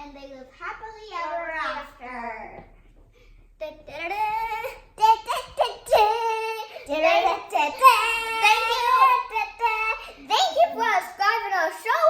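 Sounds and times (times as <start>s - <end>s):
child singing in high voice: 3.6s - 12.0s.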